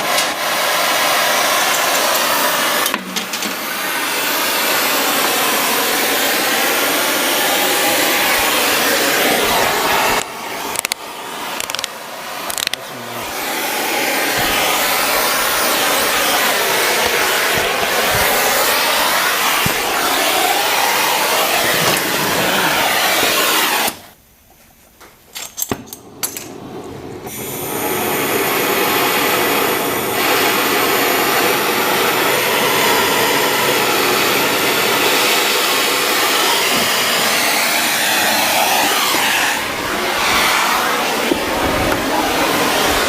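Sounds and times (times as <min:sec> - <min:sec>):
torch flame hissing: 0:00.0 - 0:24.2, 0:26.0 - 0:43.0
sharp clicks: 0:10.2 - 0:11.0, 0:11.6 - 0:12.8.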